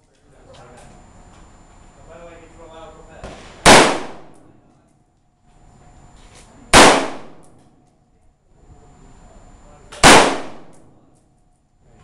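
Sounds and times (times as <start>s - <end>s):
rifle shots: 3.6s - 4.5s, 6.7s - 7.6s, 10.0s - 11.0s.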